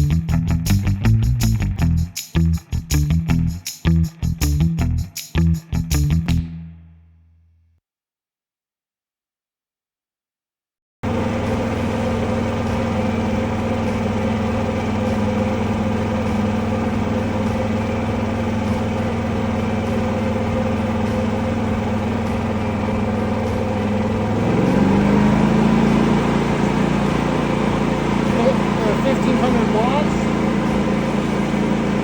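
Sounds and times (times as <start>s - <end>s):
generator engine running: 11.0s - 32.0s.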